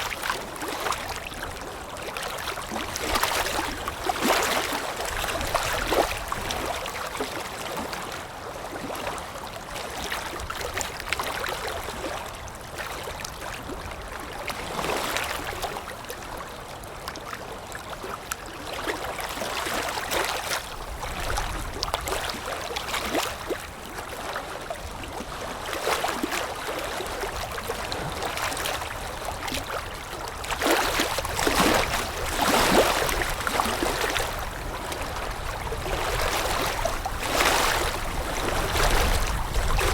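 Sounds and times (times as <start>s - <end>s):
waves lapping against shore: 0.0s - 39.9s
low wind rumble: 34.4s - 39.9s.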